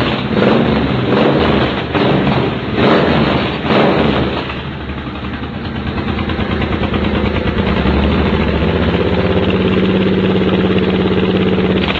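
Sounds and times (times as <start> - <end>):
motorcycle engine idling: 3.5 - 11.9.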